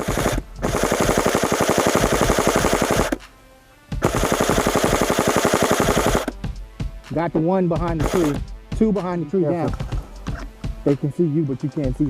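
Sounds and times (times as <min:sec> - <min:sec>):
airsoft rifle full-auto bursts: 0:00.0 - 0:03.2, 0:04.0 - 0:06.3, 0:08.0 - 0:08.4.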